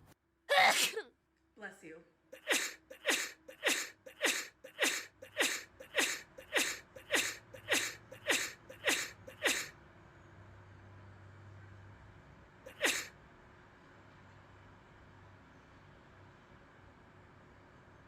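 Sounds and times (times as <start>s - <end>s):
short sneezes: 0.5s - 1.0s, 2.4s - 9.7s, 12.7s - 13.1s.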